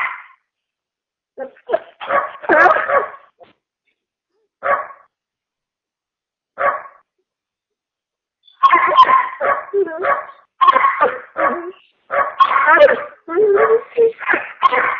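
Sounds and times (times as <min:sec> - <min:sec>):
dog barking over phone: 0:00.0 - 0:00.4, 0:01.8 - 0:03.4, 0:04.6 - 0:05.1, 0:06.6 - 0:07.1, 0:08.6 - 0:14.9.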